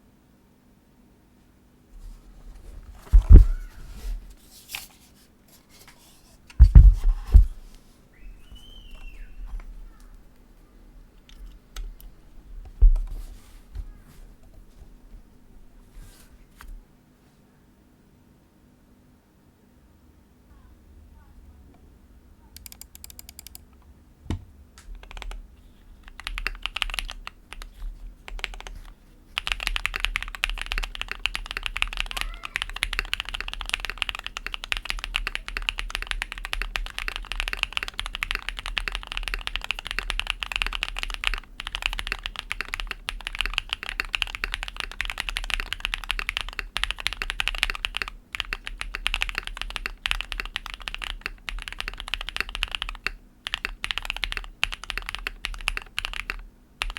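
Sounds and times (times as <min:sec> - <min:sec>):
mechanical keyboard typing: 0:22.6 - 0:23.7, 0:24.9 - 0:25.4, 0:26.0 - 0:56.9.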